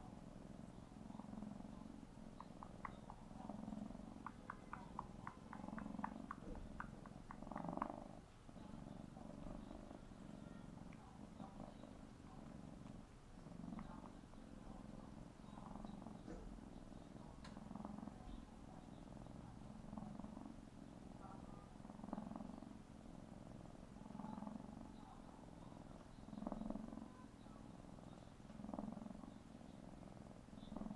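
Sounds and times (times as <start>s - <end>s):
kitten purring: 0.0s - 30.9s
lip-smacking clicks: 2.3s - 8.2s.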